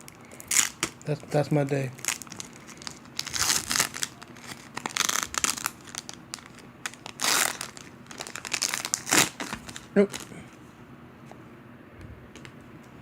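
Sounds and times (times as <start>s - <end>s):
foil wrapper crinkling and tearing: 0.0s - 10.3s.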